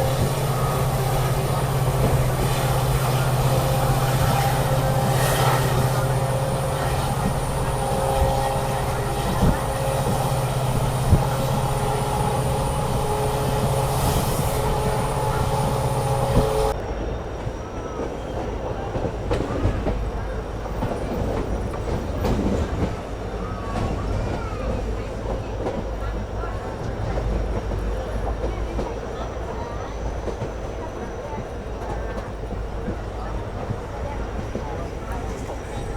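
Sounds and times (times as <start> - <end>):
train wheels rumbling on rail: 0.0 - 35.9.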